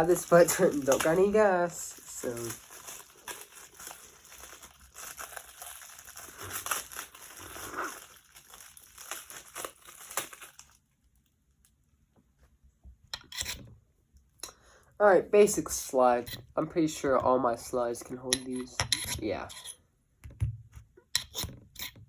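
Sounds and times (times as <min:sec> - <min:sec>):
packaging crinkling: 0:00.0 - 0:11.3.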